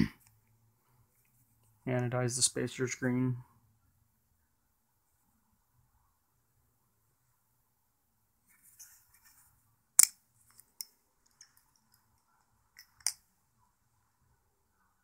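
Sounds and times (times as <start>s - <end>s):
light metal scraping: 8.5s - 9.6s.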